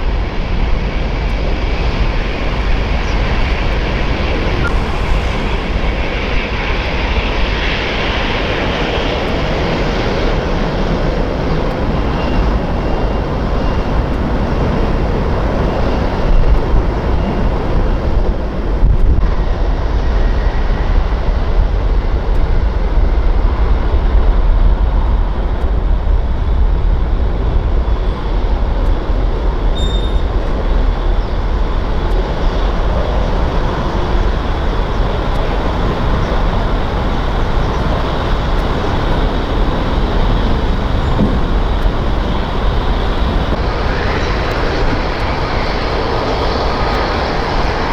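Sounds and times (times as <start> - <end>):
jet engines roaring: 0.0 - 47.9.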